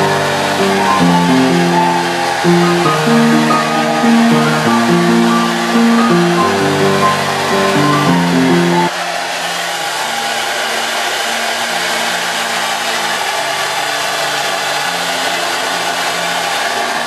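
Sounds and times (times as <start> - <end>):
guitar music: 0.0 - 8.9
hair dryer blowing air: 0.0 - 17.0.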